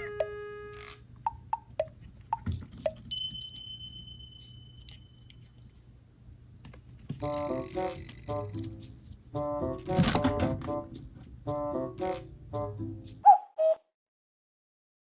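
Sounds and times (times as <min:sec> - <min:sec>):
background piano music: 0:00.0 - 0:01.5, 0:07.2 - 0:13.4
bright sustained ding: 0:03.1 - 0:04.8.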